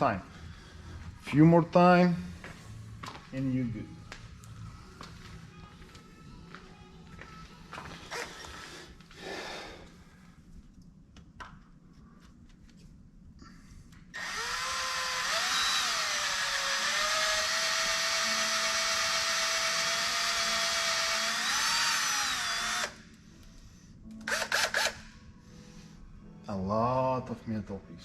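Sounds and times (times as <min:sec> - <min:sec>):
power drill boring into metal: 0:14.2 - 0:23.0, 0:24.3 - 0:25.0.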